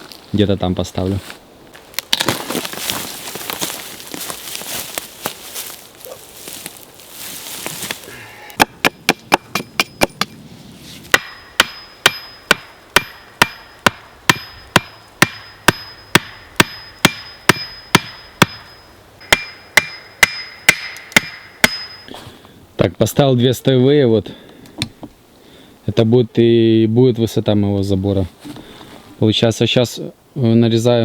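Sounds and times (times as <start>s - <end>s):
axe striking wood: 8.6s - 10.4s, 11.1s - 22.0s.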